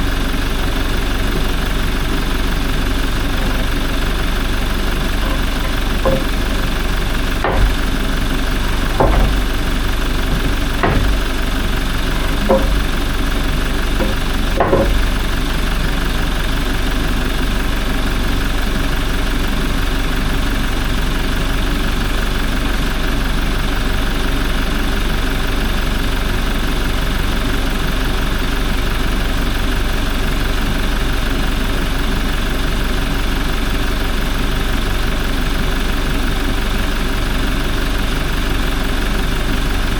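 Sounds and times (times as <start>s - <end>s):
sharp knocks: 5.0s - 13.2s, 14.0s - 15.4s.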